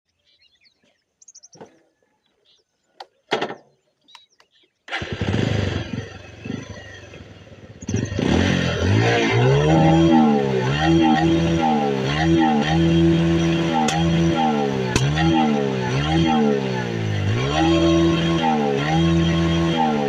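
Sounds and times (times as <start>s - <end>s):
motorcycle engine misfiring: 4.9s - 8.6s.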